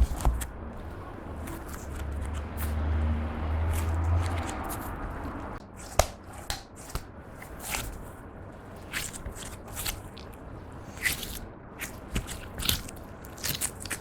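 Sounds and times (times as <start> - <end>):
rumbling handling noise: 0.0 - 14.0
slime crackling and popping: 11.0 - 14.0.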